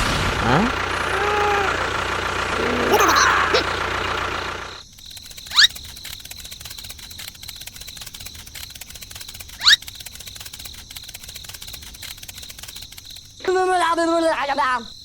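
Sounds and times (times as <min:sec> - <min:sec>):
loud noise: 0:00.0 - 0:04.8
fast even ticking: 0:00.6 - 0:13.4
sharply rising chirp: 0:02.5 - 0:11.3.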